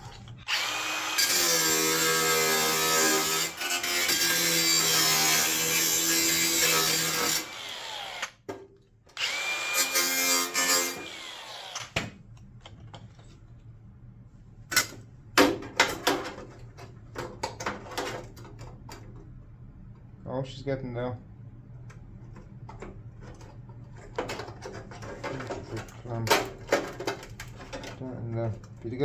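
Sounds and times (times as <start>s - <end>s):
power tool whining down: 0.5s - 1.6s, 6.9s - 8.3s, 9.2s - 12.0s.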